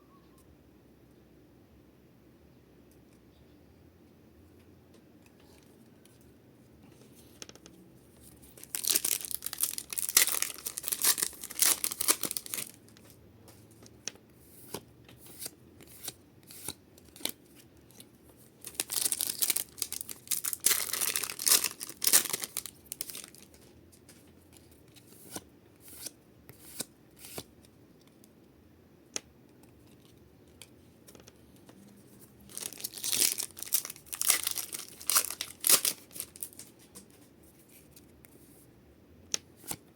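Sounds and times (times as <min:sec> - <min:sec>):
cards rustling: 0:07.0 - 0:27.5, 0:29.7 - 0:38.1
foil wrappers tearing and crinkling: 0:08.5 - 0:12.8, 0:18.6 - 0:23.5, 0:32.5 - 0:36.7.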